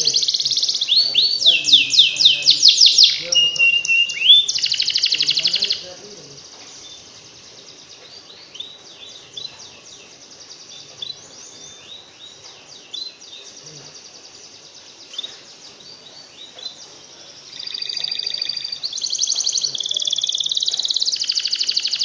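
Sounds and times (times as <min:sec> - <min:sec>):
sharp bird ticks: 0:00.0 - 0:06.8, 0:17.6 - 0:22.0
songbirds chirping and trilling: 0:00.0 - 0:22.0.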